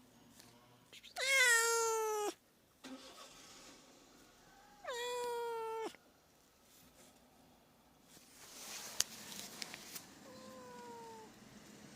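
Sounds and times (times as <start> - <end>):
cat meowing: 1.0 - 2.4, 4.8 - 6.0, 10.2 - 11.4.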